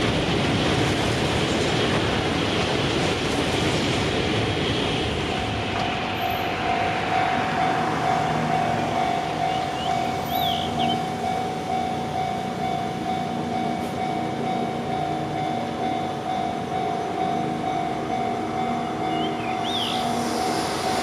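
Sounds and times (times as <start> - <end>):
level crossing warning bell: 5.4 - 21.0.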